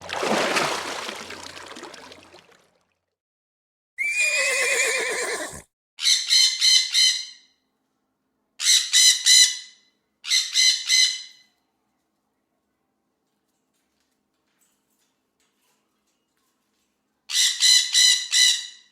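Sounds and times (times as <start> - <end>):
monkey screams: 4.0 - 5.6
horse whinny: 4.0 - 5.7.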